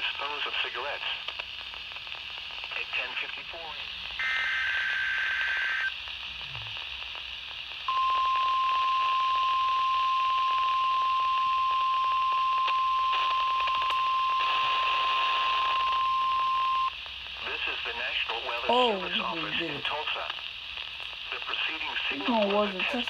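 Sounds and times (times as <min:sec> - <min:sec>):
radio receiver hiss: 0:00.0 - 0:23.0
steady high alarm tone: 0:04.2 - 0:05.9.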